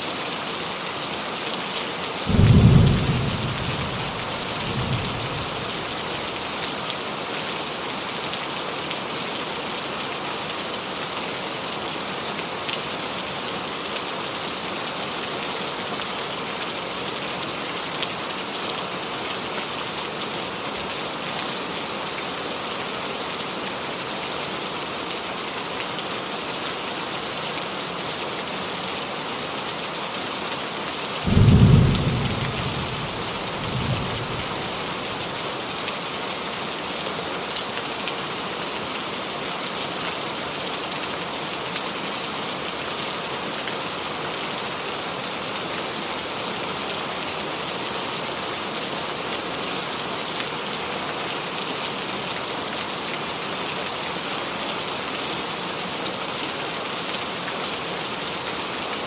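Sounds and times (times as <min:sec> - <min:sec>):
rain on a roof: 0:00.0 - 0:59.0
loud thunderclap: 0:02.3 - 0:05.2, 0:31.3 - 0:34.0
thunder rumble: 0:02.3 - 0:05.3.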